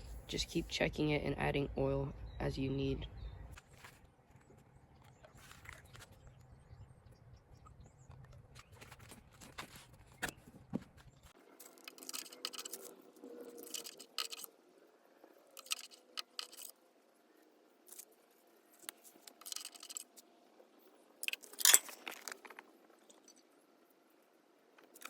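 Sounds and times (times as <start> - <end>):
small hard objects clinking and scraping: 11.4 - 14.5, 15.6 - 16.8, 21.2 - 23.5.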